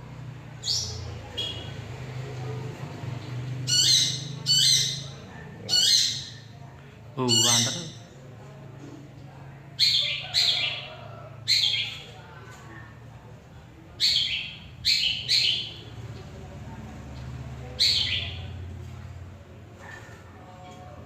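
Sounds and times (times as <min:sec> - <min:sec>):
bird giving sharp harsh calls: 0:07.2 - 0:08.1.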